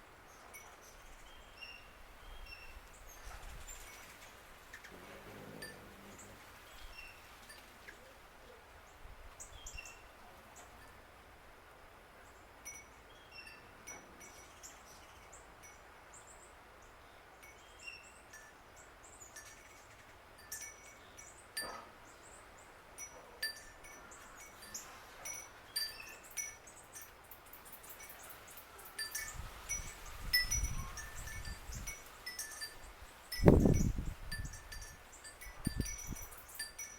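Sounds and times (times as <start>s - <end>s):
faint outdoor hiss: 0.0s - 36.9s
wind chimes tinkling: 0.5s - 3.2s, 5.3s - 7.8s, 12.6s - 16.0s, 17.4s - 22.2s, 22.9s - 36.9s.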